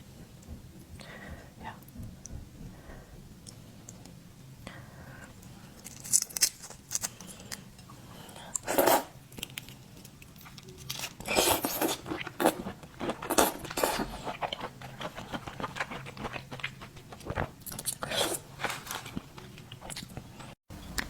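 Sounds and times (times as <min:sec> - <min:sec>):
crunching and chewing food: 0:05.6 - 0:21.0.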